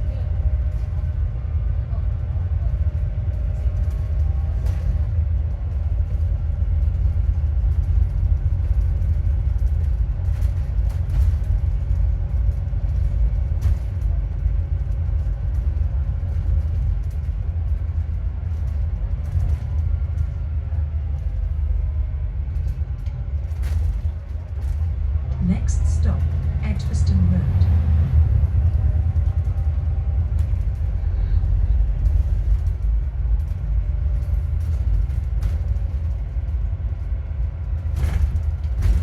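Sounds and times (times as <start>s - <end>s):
bus engine and road rumble: 0.0s - 39.0s
steady whine: 16.2s - 39.0s.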